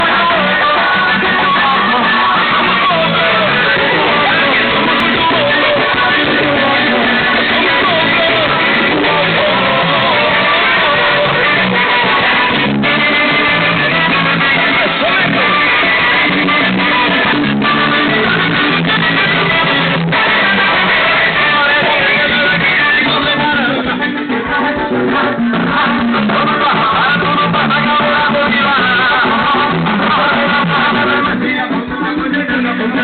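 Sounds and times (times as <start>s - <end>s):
loud music with guitar: 0.0s - 33.0s
person singing: 0.0s - 33.0s.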